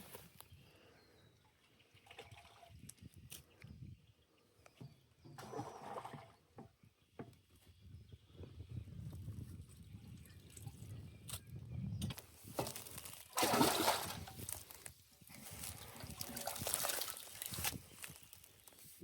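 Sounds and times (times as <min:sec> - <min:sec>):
water sloshing and splashing: 0:12.5 - 0:18.3.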